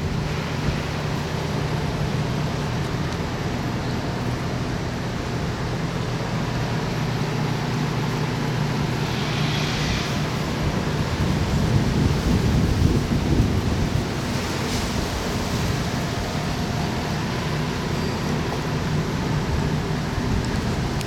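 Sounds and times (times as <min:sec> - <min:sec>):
wind rumble on microphone: 0:06.8 - 0:17.8, 0:18.4 - 0:21.0
strong wind blowing: 0:06.9 - 0:16.8.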